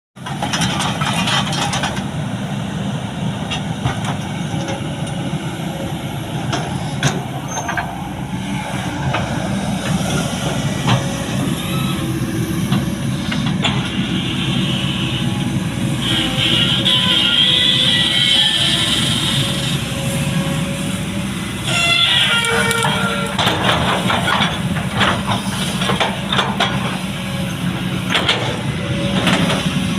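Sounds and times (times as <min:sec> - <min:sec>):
excavator diesel engine running: 0:00.2 - 0:29.9
machine knocks and clanks: 0:23.4 - 0:27.0.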